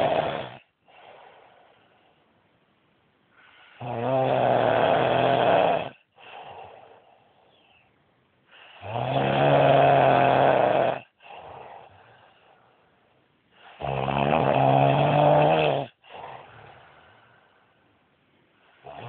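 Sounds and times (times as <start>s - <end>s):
man snoring: 0.0s - 0.7s, 3.8s - 6.7s, 8.7s - 11.9s, 13.6s - 16.5s
soft breath out: 0.8s - 2.4s, 6.1s - 8.8s, 11.2s - 13.8s, 16.0s - 18.9s.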